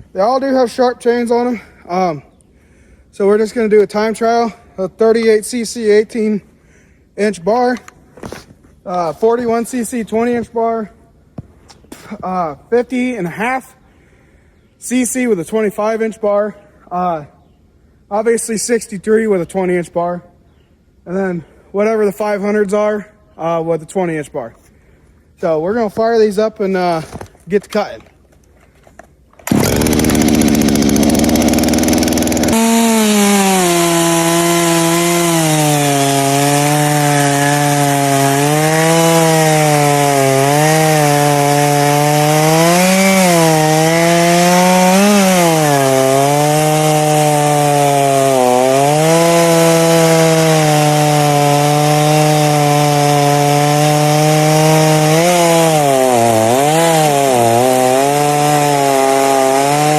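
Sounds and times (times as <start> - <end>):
chainsaw cutting log: 29.4 - 59.9.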